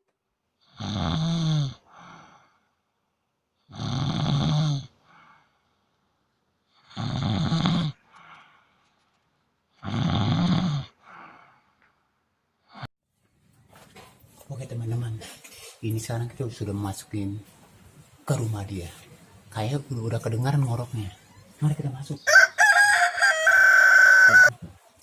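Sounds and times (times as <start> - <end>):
person snoring: 0.6 - 2.6, 3.7 - 5.5, 6.7 - 8.2, 9.8 - 11.6
soft breath: 8.0 - 9.2.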